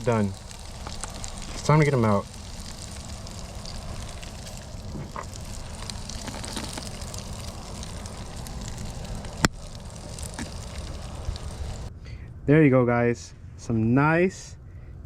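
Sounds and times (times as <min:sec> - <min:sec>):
food sizzling in grease: 0:00.0 - 0:11.9.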